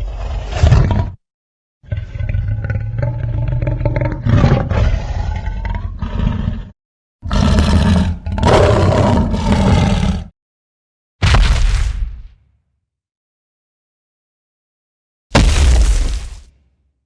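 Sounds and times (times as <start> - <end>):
monster roar: 1.9 - 10.3.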